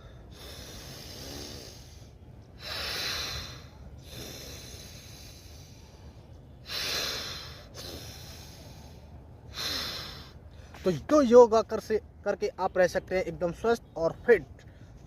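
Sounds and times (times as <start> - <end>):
deep nasal breathing: 0.0 - 10.8.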